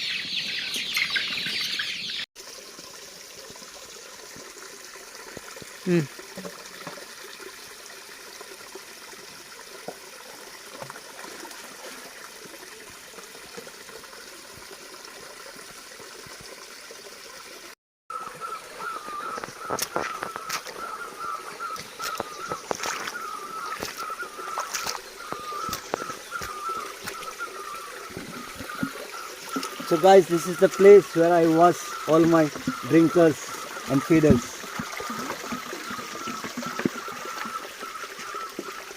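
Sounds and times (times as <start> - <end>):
stream water trickling: 0.0 - 38.9
sharp water splashes: 19.2 - 38.4.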